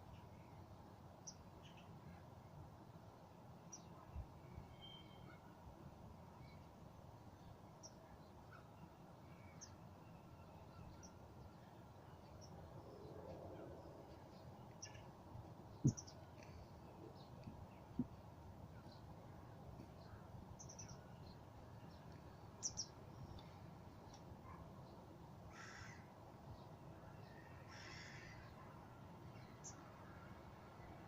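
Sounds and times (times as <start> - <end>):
low steady background rumble: 0.0 - 31.0
faint high bird chirps: 3.8 - 5.6, 15.8 - 16.5, 22.5 - 23.5.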